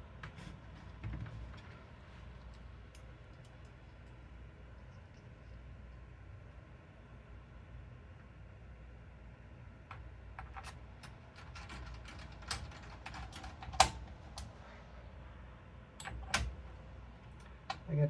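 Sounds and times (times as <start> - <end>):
computer parts clicking: 10.4 - 14.5.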